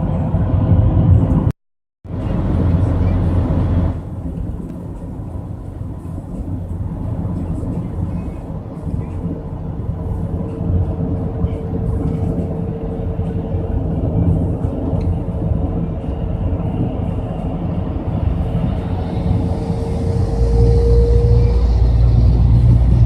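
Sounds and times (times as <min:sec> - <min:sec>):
bus engine and road rumble: 0:00.0 - 0:23.0.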